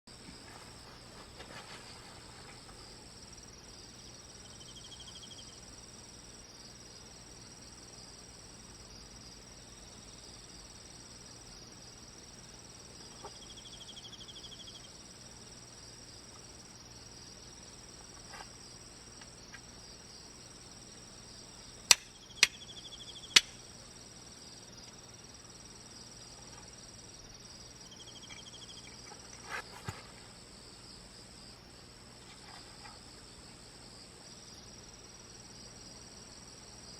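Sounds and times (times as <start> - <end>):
crickets and insects chirring: 0.1 - 36.9
buzzy insect trill: 8.8 - 31.6
sharp cracks: 21.9 - 22.7, 23.3 - 23.6.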